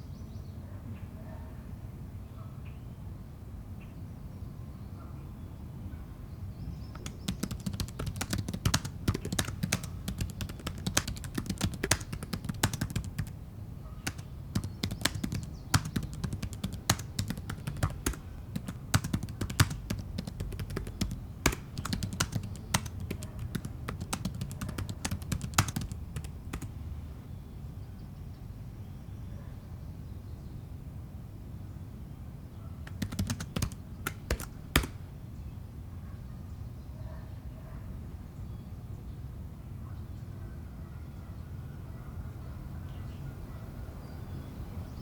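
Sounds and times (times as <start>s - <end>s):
rapid clicking and tapping: 7.0s - 13.4s, 14.0s - 26.8s, 32.9s - 35.0s.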